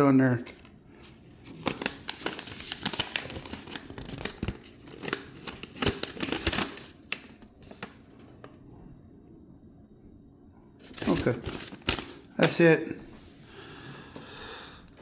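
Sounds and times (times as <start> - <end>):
packaging rustling and crinkling: 0.5 - 8.3, 10.8 - 12.6.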